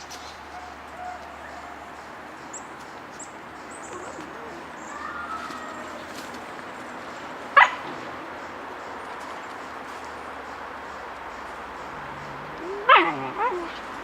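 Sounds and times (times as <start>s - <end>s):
puppy barking: 7.6s - 7.9s, 12.6s - 13.8s
puppy whining: 12.6s - 13.8s.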